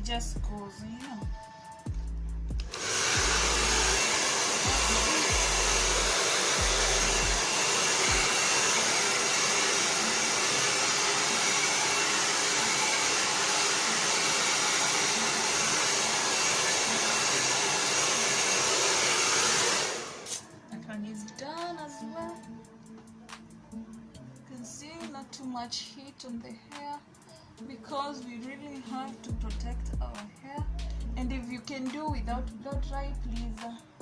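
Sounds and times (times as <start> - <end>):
blow dryer blowing air: 2.5 - 20.5.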